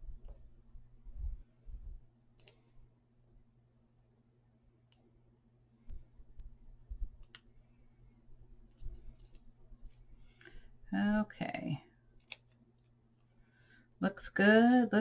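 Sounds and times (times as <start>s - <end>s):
light paper clicks: 12.2s - 13.4s.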